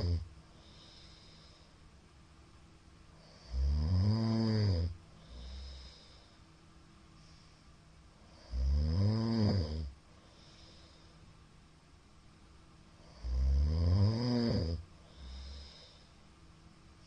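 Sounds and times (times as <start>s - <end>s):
man snoring loudly: 0.0s - 0.2s, 3.2s - 6.0s, 8.3s - 10.0s, 13.0s - 15.9s
soft low breath: 0.0s - 2.0s, 4.8s - 8.5s, 9.8s - 11.5s, 14.8s - 17.0s.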